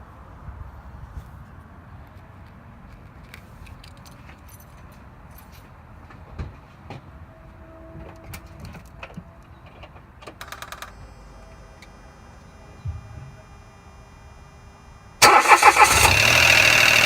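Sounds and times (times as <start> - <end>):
faint steady high tone: 10.9 - 15.2.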